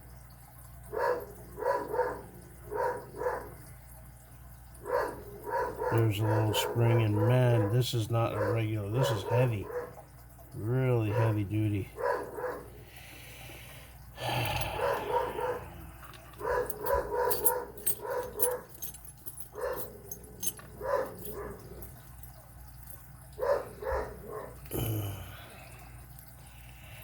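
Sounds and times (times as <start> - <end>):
dog barking: 0.9 - 3.6, 4.8 - 10.0, 10.6 - 12.8, 14.7 - 18.9, 19.5 - 22.0, 23.3 - 24.6.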